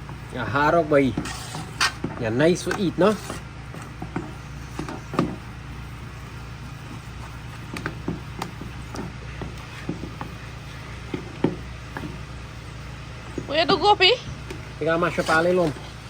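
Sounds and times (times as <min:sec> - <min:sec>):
steady low hum: 0:00.0 - 0:16.0
spoon scraping in a pot: 0:01.1 - 0:02.0.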